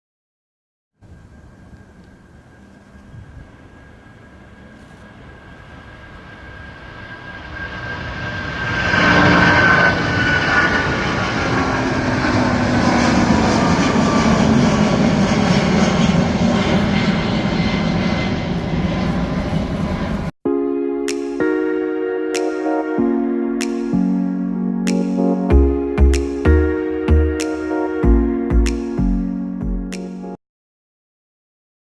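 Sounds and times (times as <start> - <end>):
high engine whine: 1.0 - 20.3
jet engines roaring: 1.0 - 20.3.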